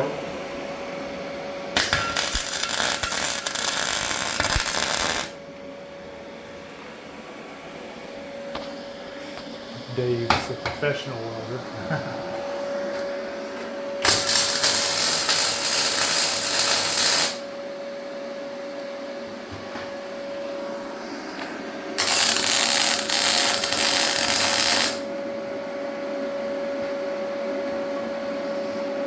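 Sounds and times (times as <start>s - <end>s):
steady hum: 0.0s - 29.0s
welder hissing: 1.8s - 5.4s, 14.0s - 17.4s, 22.0s - 25.1s.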